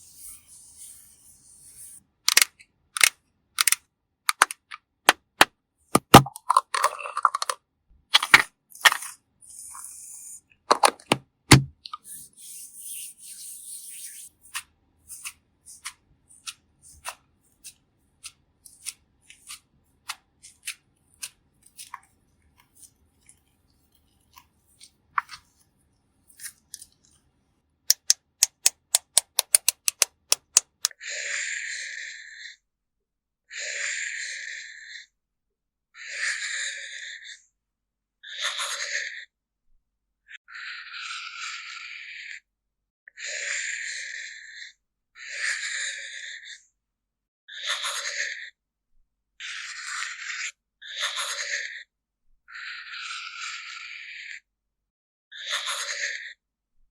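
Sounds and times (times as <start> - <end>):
sharp clicks and taps on gourd: 27.9 - 30.9.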